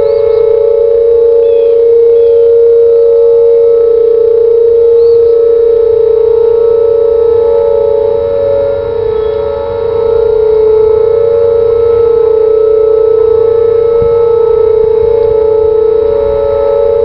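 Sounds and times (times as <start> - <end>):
faint bird chirps: 0.0 - 6.3, 9.1 - 9.5
warning sirens steady tone: 0.0 - 17.0.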